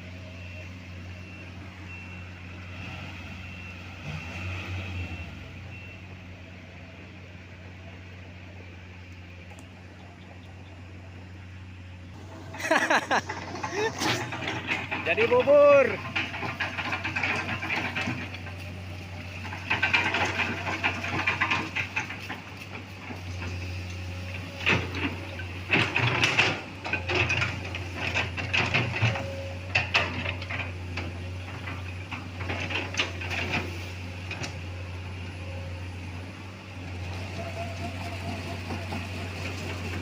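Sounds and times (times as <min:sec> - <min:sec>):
diesel machinery droning: 0:00.0 - 0:40.0
metal clanks and knocks: 0:12.2 - 0:34.8.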